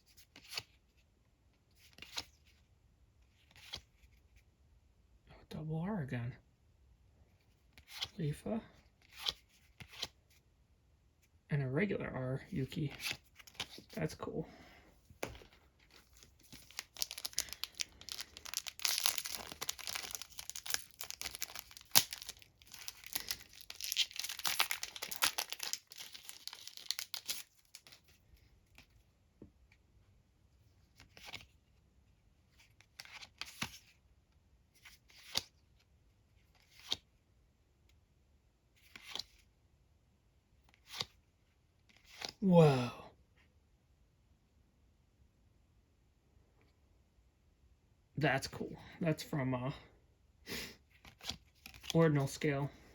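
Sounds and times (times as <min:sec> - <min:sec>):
foil wrapper tearing and crinkling: 0:16.2 - 0:27.9.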